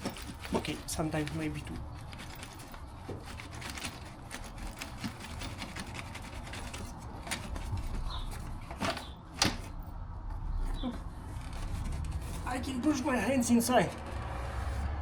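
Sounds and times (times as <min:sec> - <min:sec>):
tools clicking and rattling: 0:00.0 - 0:09.9.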